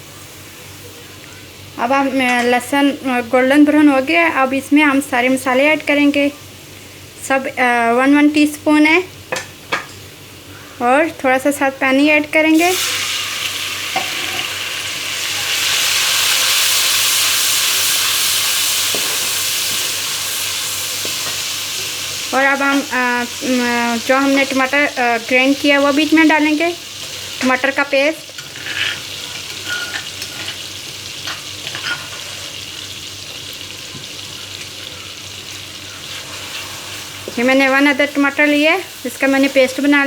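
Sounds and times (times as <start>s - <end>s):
oil sizzling in a pan: 11.6s - 40.0s
water splashing into hot oil: 12.6s - 21.6s
stirring scrapes in pan: 28.4s - 32.6s.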